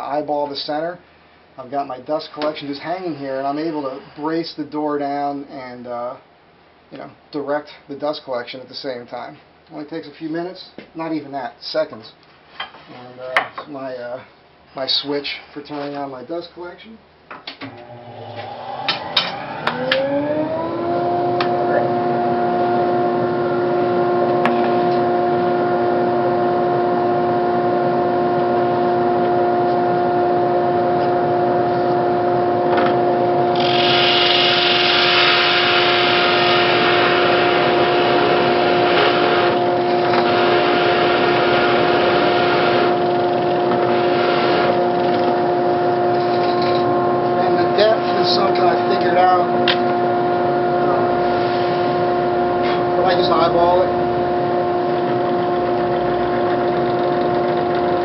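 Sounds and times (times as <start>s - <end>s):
dust collector motor whine: 17.6s - 58.0s
drill press boring into wood: 33.5s - 45.4s.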